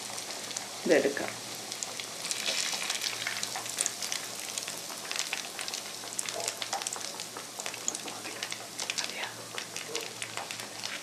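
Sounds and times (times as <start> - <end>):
chicken deep-frying sizzle: 0.0 - 11.0.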